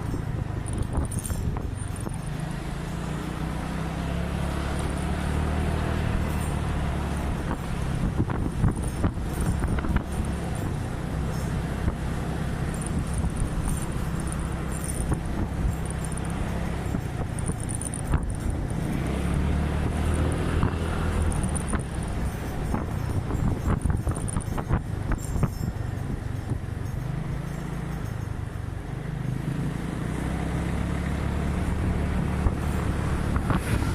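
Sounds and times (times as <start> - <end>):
wind buffeting microphone: 0.0 - 2.4, 6.9 - 27.0, 31.6 - 33.9
scooter engine running: 0.0 - 33.9.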